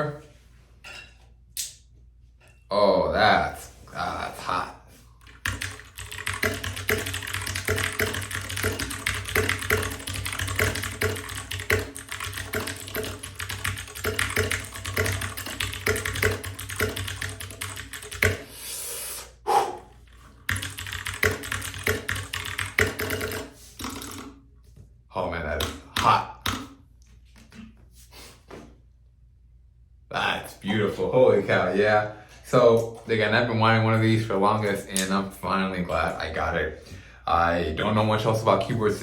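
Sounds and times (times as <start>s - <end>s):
clicky mechanical keyboard typing: 5.2s - 18.4s, 20.5s - 23.5s.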